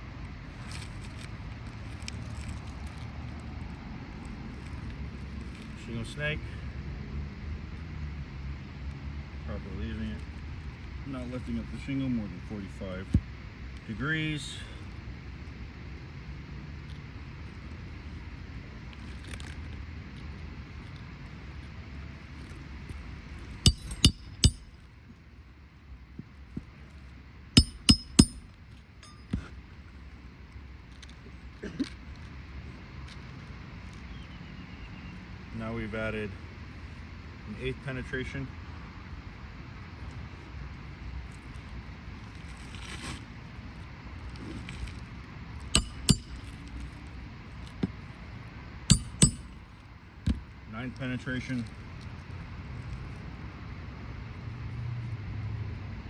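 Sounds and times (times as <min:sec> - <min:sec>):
hammer driving roofing nails: 0:23.7 - 0:24.6, 0:27.6 - 0:28.4, 0:45.8 - 0:46.5, 0:48.9 - 0:49.5
light hammer taps: 0:23.7 - 0:24.7, 0:27.6 - 0:28.4, 0:45.8 - 0:46.4, 0:48.9 - 0:49.5.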